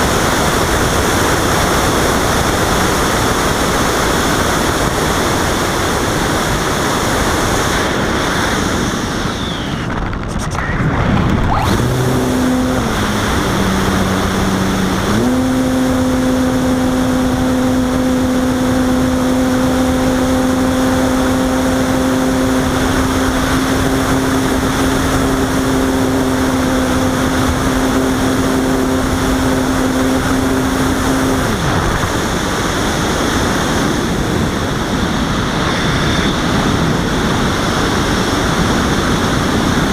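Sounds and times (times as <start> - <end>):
rushing air noise: 6.2 - 15.3, 30.5 - 39.9
motor hum with overtones: 7.1 - 37.0.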